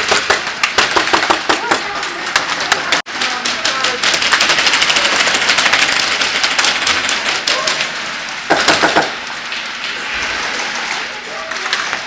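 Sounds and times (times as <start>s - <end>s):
cluster of knocks: 0.0s - 7.4s, 8.5s - 9.2s.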